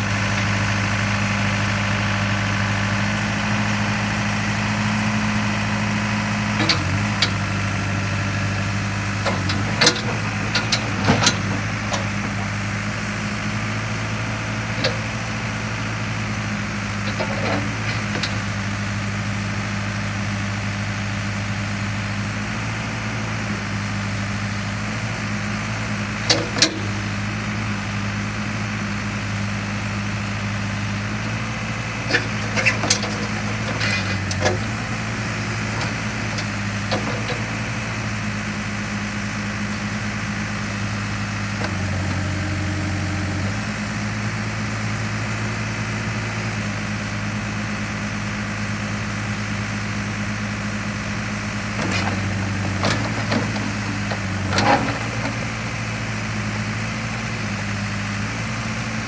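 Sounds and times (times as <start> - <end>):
diesel engine running: 0.0 - 59.0.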